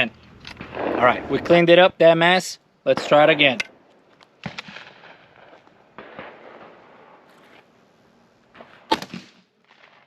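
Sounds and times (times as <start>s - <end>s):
shotgun reports: 0.6s - 3.6s.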